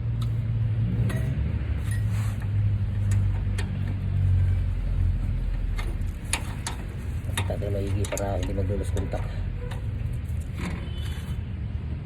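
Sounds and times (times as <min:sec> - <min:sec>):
vehicle engine humming: 0:00.0 - 0:12.0.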